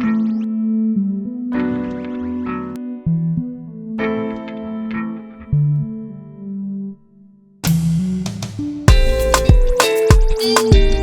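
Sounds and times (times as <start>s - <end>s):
sustained instrumental chords: 7.6s - 11.0s
plucked strings: 8.9s - 11.0s.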